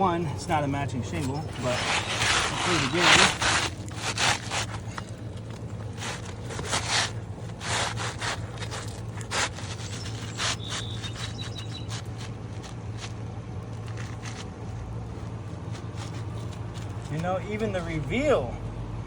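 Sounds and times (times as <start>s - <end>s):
steady low hum: 0.0s - 19.0s
shingles scraping together: 0.5s - 14.5s.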